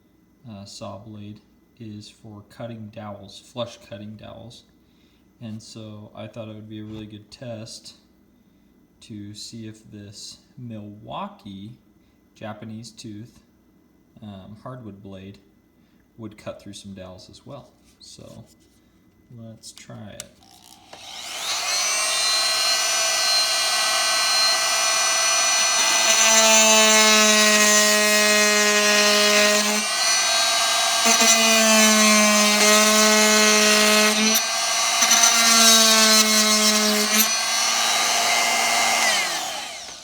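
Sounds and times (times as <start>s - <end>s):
oscillating multi-tool cutting wood: 20.4s - 40.0s.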